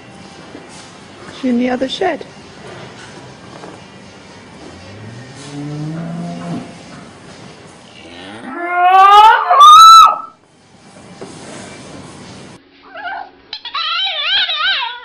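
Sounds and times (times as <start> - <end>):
cow mooing: 4.8 - 6.9, 8.0 - 9.4.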